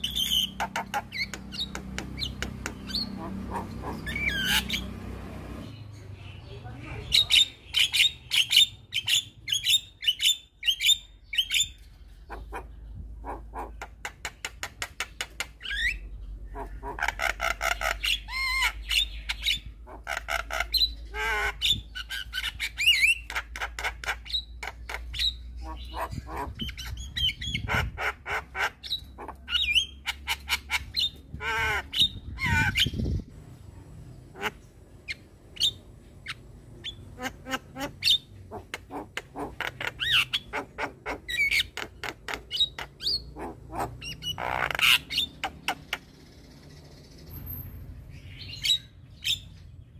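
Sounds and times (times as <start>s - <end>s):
myna bird squawking and chattering: 0.0s - 33.4s, 34.1s - 49.9s.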